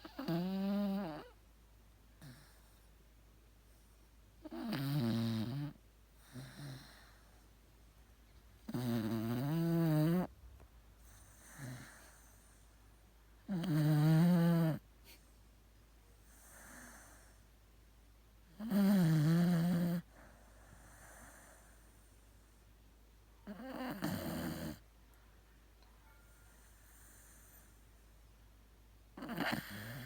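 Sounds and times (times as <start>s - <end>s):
dog snoring: 0.0s - 1.4s, 2.2s - 2.8s, 4.4s - 7.4s, 8.6s - 10.3s, 11.0s - 12.6s, 13.5s - 14.8s, 16.3s - 17.4s, 18.5s - 21.9s, 23.4s - 24.8s, 29.2s - 30.0s
soft breaths: 5.7s - 9.4s, 10.2s - 13.8s, 14.8s - 17.9s, 19.6s - 23.0s, 23.7s - 28.3s.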